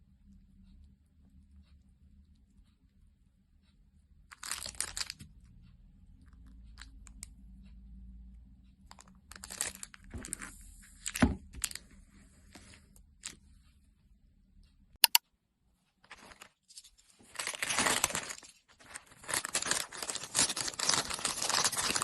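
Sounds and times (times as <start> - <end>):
packaging crinkling and tearing: 4.3 - 5.3, 9.3 - 11.8, 16.1 - 22.0.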